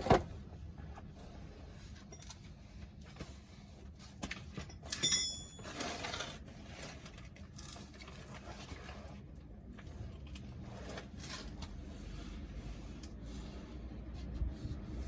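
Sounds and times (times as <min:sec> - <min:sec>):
sharp metallic clink: 0:04.9 - 0:05.8.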